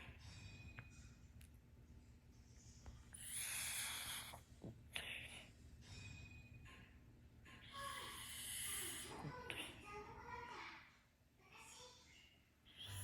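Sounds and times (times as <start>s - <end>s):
dog snoring: 3.1s - 5.5s, 7.8s - 9.7s, 12.7s - 13.0s.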